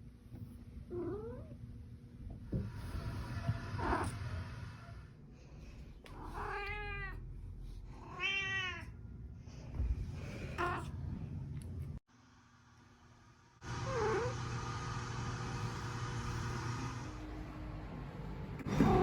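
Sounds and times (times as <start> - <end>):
cat meowing: 8.0 - 8.9.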